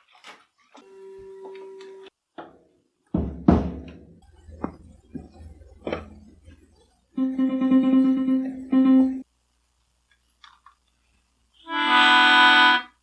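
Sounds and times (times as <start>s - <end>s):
guitar chords and plucked notes: 4.5s - 9.2s
melodica held reedy chord: 7.2s - 9.2s, 11.6s - 13.0s.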